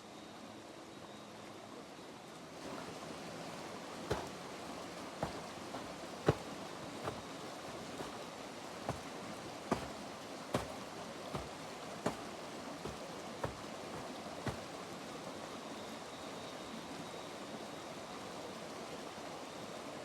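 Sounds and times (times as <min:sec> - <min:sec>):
rushing water: 0:02.6 - 0:15.5
sharp short knocks: 0:04.1 - 0:04.3, 0:05.2 - 0:07.2, 0:07.9 - 0:08.2, 0:09.7 - 0:10.0, 0:10.6 - 0:14.7.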